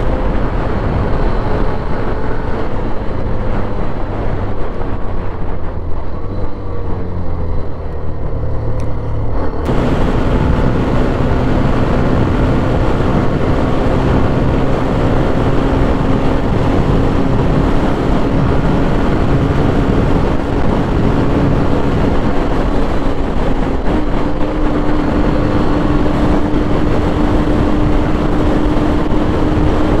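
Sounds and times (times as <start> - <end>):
motorcycle engine running: 0.0 - 30.0
wind and road rush: 0.0 - 30.0.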